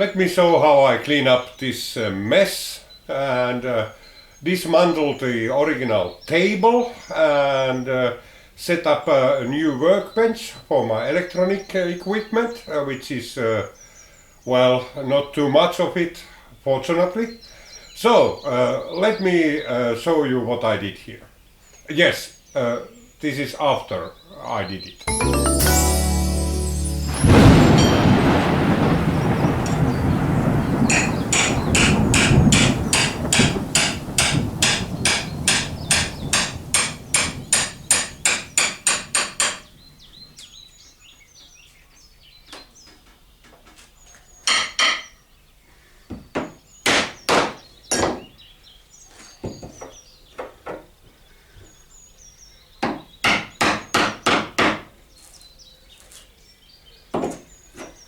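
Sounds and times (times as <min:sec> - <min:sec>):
ringing hammer blows: 0:25.1 - 0:28.6, 0:30.9 - 0:39.6.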